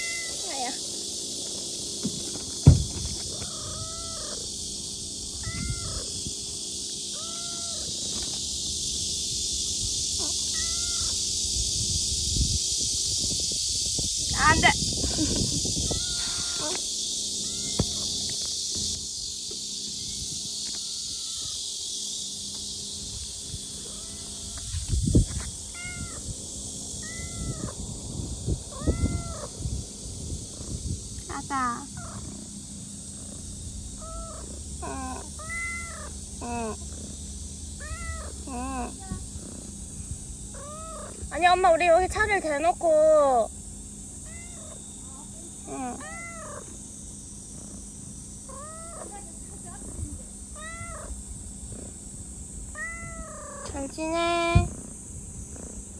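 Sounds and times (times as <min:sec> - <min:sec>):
kitten meowing: 0:00.0 - 0:00.8, 0:03.3 - 0:04.4, 0:05.4 - 0:06.1, 0:07.1 - 0:07.9, 0:10.2 - 0:11.2, 0:17.4 - 0:18.0, 0:20.7 - 0:21.6, 0:23.9 - 0:24.7, 0:25.7 - 0:26.2, 0:27.0 - 0:27.8, 0:28.7 - 0:29.5, 0:34.0 - 0:36.6, 0:37.8 - 0:38.9, 0:40.6 - 0:41.2, 0:44.3 - 0:44.8, 0:45.9 - 0:46.6, 0:50.6 - 0:51.2, 0:52.7 - 0:53.7
sharp thump: 0:02.0 - 0:03.3, 0:17.7 - 0:18.0
low bumps and rustling: 0:02.0 - 0:03.6.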